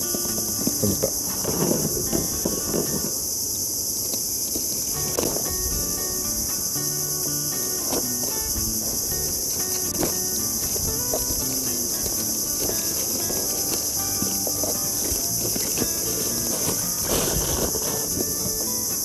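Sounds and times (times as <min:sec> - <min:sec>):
insects chorus: 0:00.0 - 0:19.0
parcel being opened: 0:09.5 - 0:19.0.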